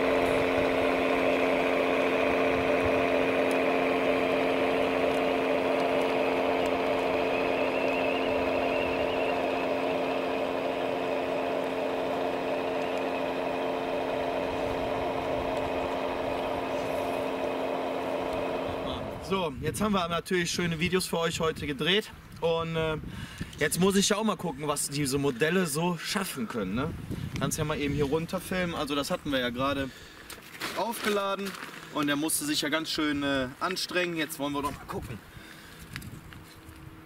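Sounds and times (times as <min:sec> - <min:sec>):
electric motors whining: 0:00.0 - 0:19.5.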